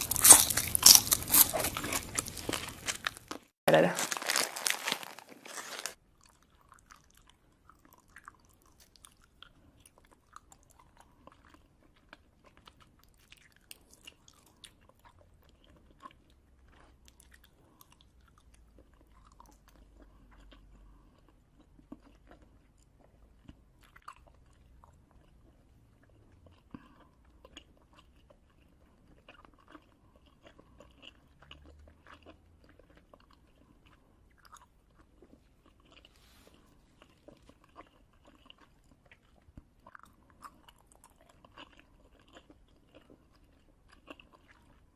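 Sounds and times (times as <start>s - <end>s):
chewing crunchy snack food: 0.0s - 44.9s.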